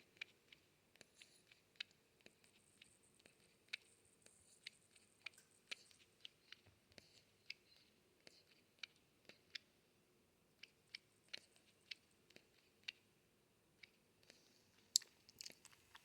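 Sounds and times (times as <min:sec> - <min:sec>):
porcupine mouth clicks: 0:10.6 - 0:13.0, 0:13.8 - 0:16.0.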